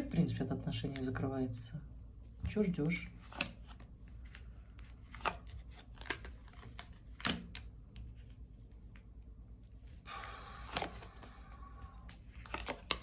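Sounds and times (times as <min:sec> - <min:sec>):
cards snapping and tapping: 0:02.8 - 0:04.4, 0:05.1 - 0:08.1, 0:10.6 - 0:11.3, 0:12.0 - 0:13.0.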